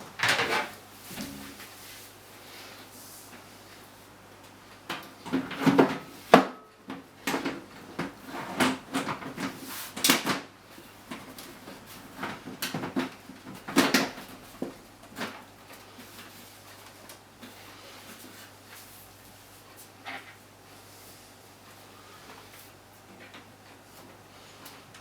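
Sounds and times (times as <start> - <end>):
faint steady hum: 0.0 - 5.1.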